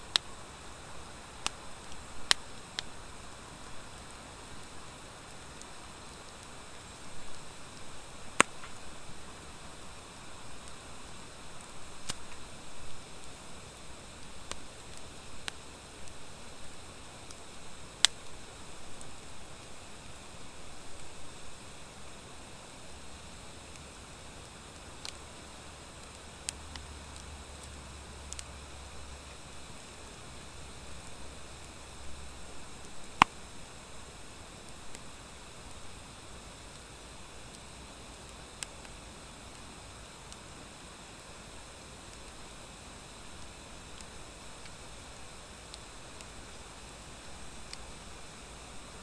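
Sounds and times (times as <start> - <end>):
crackling pops from fire: 0.0 - 49.0
wood fire hissing: 0.0 - 49.0.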